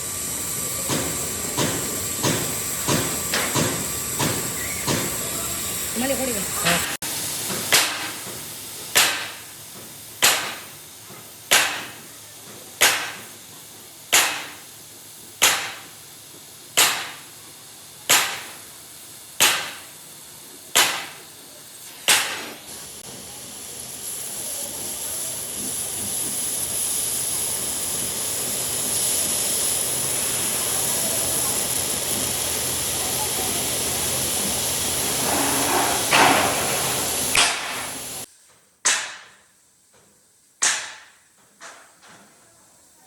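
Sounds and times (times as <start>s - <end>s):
steady high hiss: 0.0s - 41.4s.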